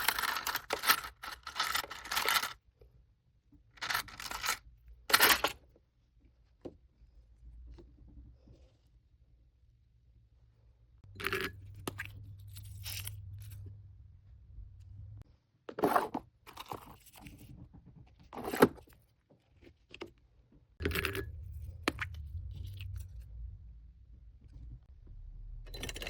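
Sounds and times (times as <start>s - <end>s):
low hum: 11.1s - 15.2s, 20.8s - 26.0s.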